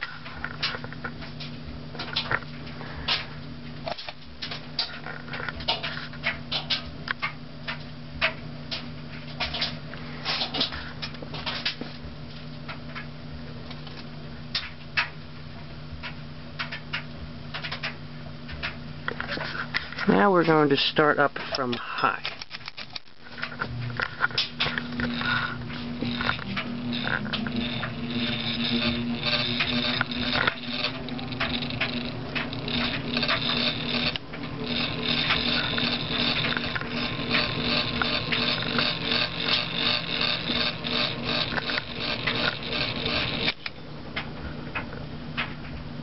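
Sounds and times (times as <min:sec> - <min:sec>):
ceiling fan hum: 0:00.0 - 0:46.0
irregular clicking: 0:24.0 - 0:44.3.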